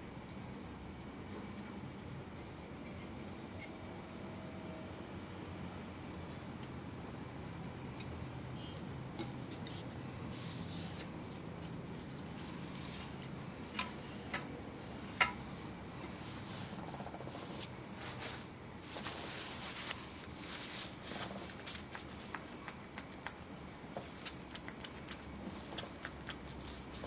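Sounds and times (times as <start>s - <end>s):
small ticks: 21.7s - 26.9s.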